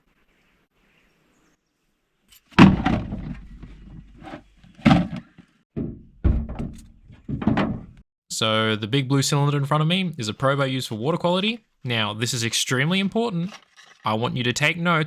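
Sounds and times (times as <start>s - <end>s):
loud thump: 2.6s - 3.7s, 5.8s - 8.0s
knocks and thuds: 2.6s - 4.2s, 4.8s - 8.0s.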